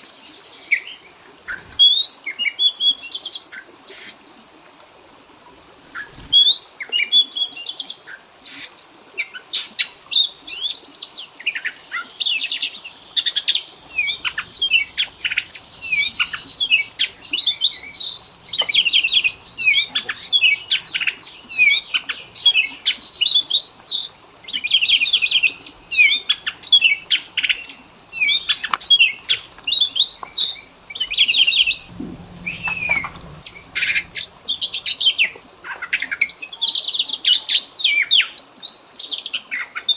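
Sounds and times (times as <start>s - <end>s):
bird singing: 12.9s - 35.3s.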